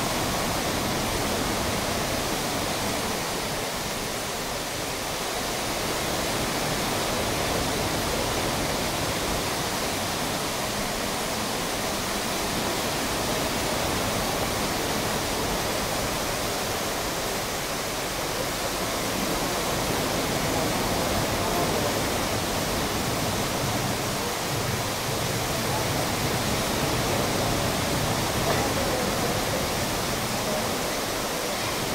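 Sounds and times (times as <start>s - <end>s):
rush of falling water: 0.0s - 31.9s.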